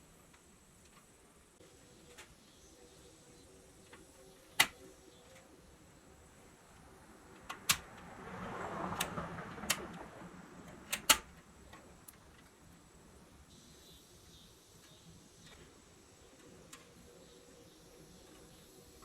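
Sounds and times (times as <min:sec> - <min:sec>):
sharp clicks and knocks: 0:03.8 - 0:05.5, 0:07.3 - 0:08.1, 0:08.9 - 0:12.6.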